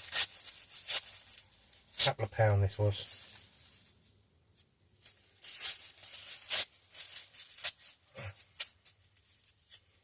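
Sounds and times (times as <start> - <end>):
packaging rustling and crinkling: 0.0 - 10.0.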